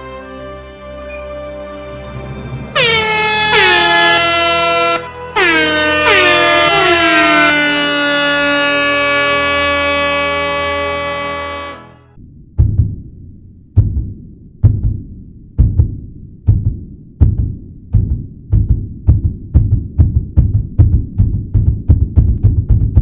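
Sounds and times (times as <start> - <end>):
air horn blasts: 2.7 - 12.1
heavy low drum hit: 12.2 - 23.0.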